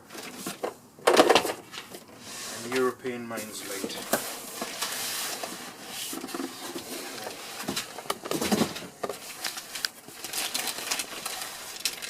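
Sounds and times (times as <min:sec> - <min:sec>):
packaging rustling: 0:03.9 - 0:12.0.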